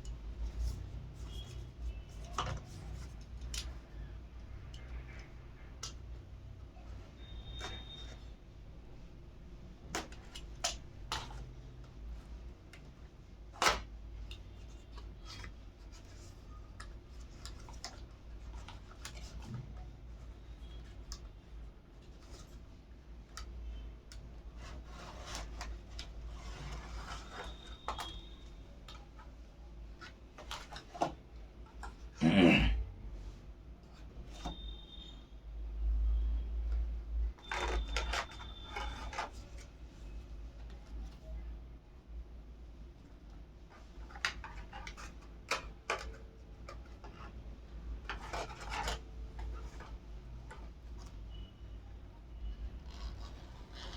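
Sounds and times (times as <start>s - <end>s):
rubbing and scraping packaging: 0.2s - 3.7s, 23.7s - 32.2s, 37.3s - 41.4s, 43.7s - 51.5s, 52.5s - 53.9s.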